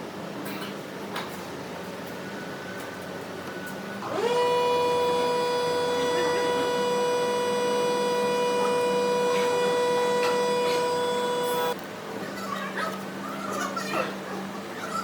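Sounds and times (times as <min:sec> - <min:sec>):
electric motor whining: 0:04.0 - 0:11.8.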